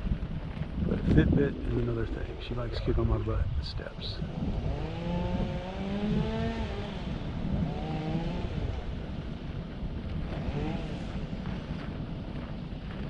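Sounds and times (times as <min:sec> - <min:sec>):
wind rumbling on microphone: 0:00.0 - 0:13.0
vehicle engine accelerating: 0:04.2 - 0:13.0.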